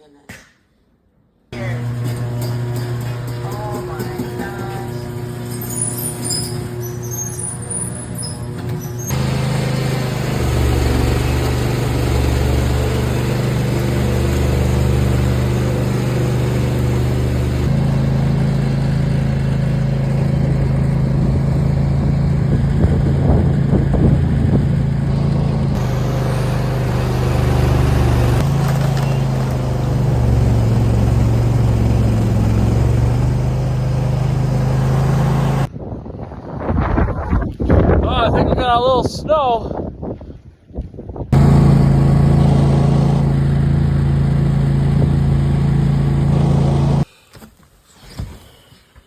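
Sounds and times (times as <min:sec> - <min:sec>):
car engine drone: 0:01.6 - 0:35.7, 0:41.4 - 0:47.1
road noise: 0:01.6 - 0:35.7, 0:41.4 - 0:47.1.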